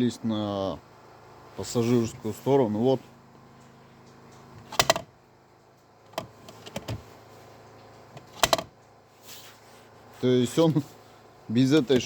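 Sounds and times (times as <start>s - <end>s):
plastic cupholder clicking: 4.7s - 5.1s, 8.2s - 8.7s.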